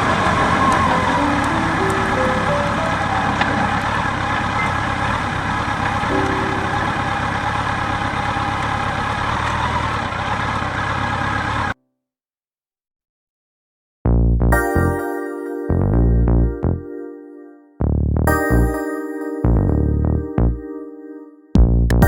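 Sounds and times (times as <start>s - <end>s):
road and wind noise: 0.0s - 11.7s.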